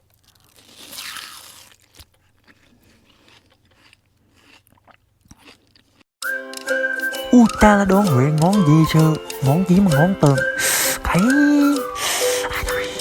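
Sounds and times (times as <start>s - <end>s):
crunching bite of crisp food: 0.0s - 6.0s
chewing crackles and clicks: 0.1s - 6.1s.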